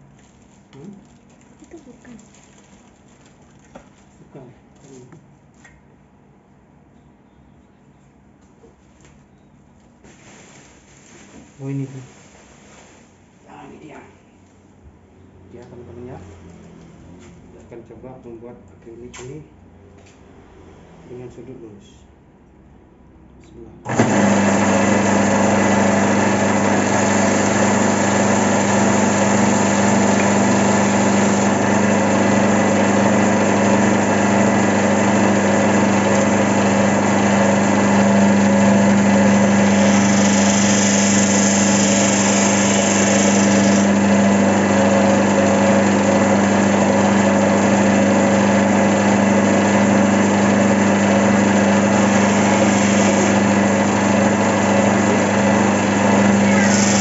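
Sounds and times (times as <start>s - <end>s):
belt sander humming: 23.9s - 57.0s.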